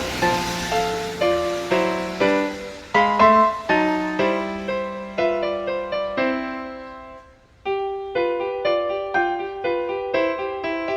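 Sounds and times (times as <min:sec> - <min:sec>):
instrumental music: 0:00.0 - 0:10.9.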